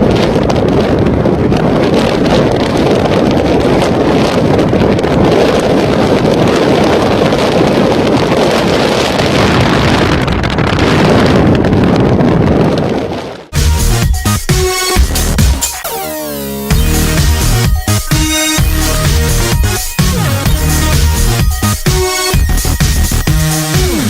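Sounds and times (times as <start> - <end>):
wind buffeting microphone: 0.0 - 14.4
electronic music: 13.6 - 24.0.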